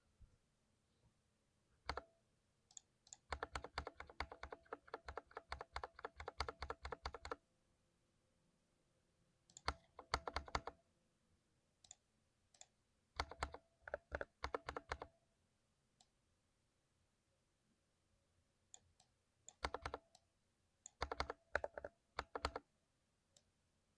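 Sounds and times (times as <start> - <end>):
mechanical keyboard typing: 3.1 - 7.4, 9.5 - 10.8, 13.2 - 15.1, 19.5 - 20.1, 20.9 - 22.6.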